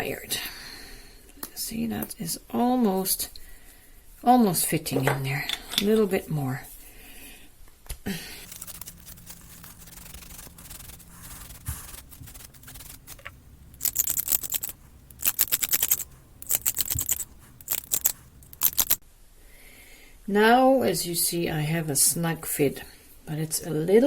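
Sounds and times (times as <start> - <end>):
hand sanding acrylic: 8.4 - 19.0.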